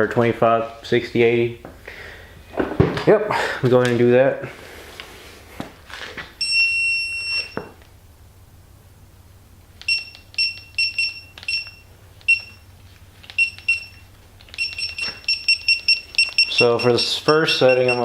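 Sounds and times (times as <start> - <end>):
torque wrench short beeps: 6.4 - 7.6, 9.9 - 12.6, 13.3 - 18.0
torque wrench long beep: 6.4 - 7.7, 9.9 - 12.7, 13.3 - 18.0.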